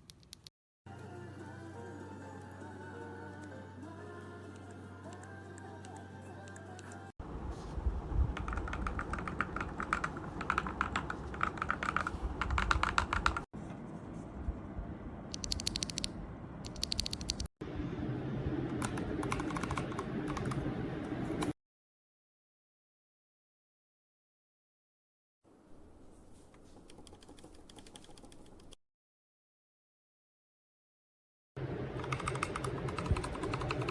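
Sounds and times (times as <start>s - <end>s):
mechanical keyboard typing: 8.4s - 13.5s, 15.3s - 16.1s, 16.7s - 17.5s, 18.8s - 20.6s, 26.8s - 28.8s, 32.0s - 33.9s.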